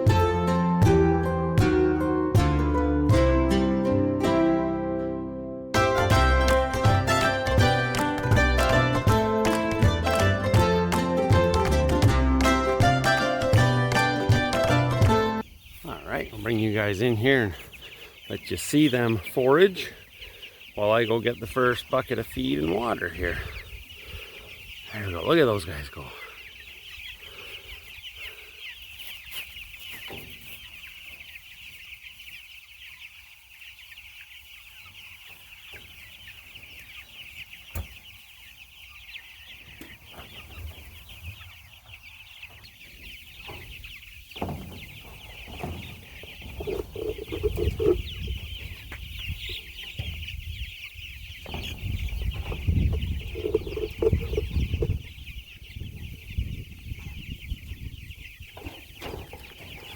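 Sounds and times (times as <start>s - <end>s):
chickens clucking: 0.0s - 59.9s.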